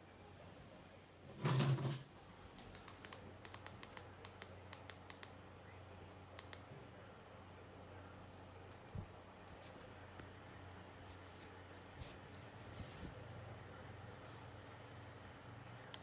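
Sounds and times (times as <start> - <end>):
faint steady hum: 0.0 - 16.0
keyboard typing clicks: 2.7 - 5.3.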